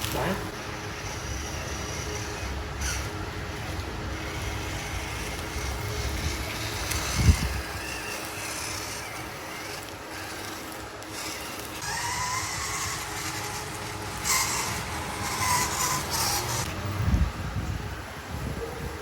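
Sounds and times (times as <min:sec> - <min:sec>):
small electric motor whining: 0:00.0 - 0:19.0.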